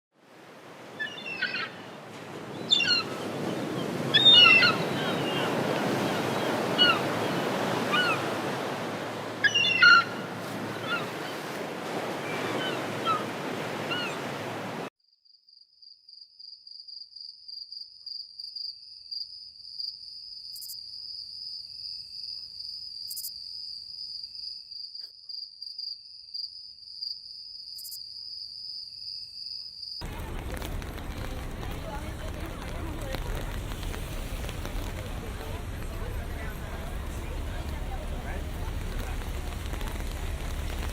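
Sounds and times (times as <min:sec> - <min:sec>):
surf rushing: 0:00.2 - 0:14.9, 0:30.0 - 0:40.9
seagulls calling: 0:00.9 - 0:14.9, 0:30.0 - 0:40.9.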